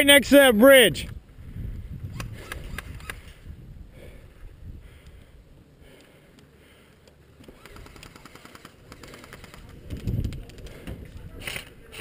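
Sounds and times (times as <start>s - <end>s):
airsoft guns firing: 7.5s - 9.8s.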